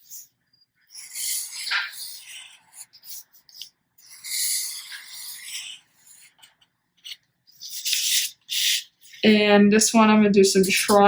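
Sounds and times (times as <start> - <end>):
marker scratching across paper: 0.0 - 0.3, 0.9 - 9.4, 10.6 - 11.0.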